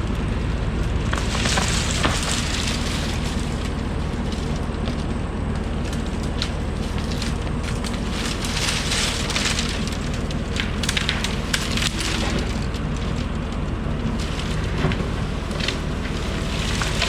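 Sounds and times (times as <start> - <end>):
excavator diesel engine running: 0.0 - 17.0
brush crackling and snapping: 0.1 - 17.0.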